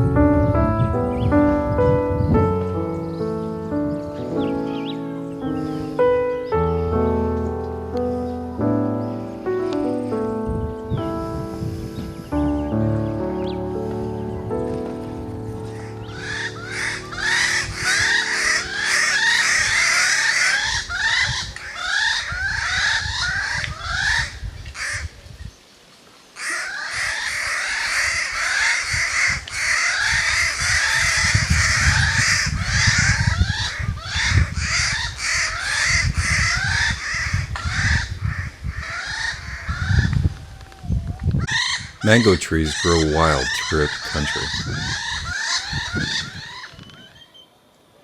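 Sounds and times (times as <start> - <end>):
flock of birds calling: 15.7 - 25.0, 26.4 - 40.7, 41.4 - 47.4.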